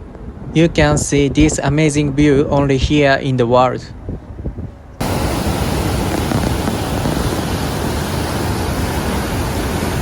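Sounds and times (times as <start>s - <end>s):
rushing waterfall: 5.0s - 10.0s.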